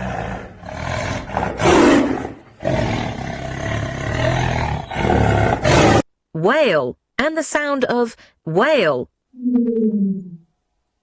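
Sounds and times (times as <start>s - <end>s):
tiger roaring and growling: 0.0s - 6.1s.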